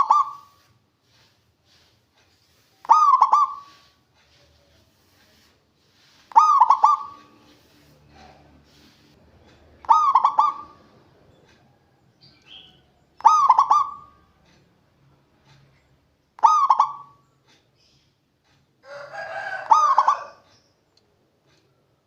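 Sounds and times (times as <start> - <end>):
dove cooing: 0.0 - 0.6, 2.8 - 4.0, 6.3 - 8.4, 9.8 - 11.0, 13.2 - 14.3, 16.4 - 17.2, 19.3 - 20.5.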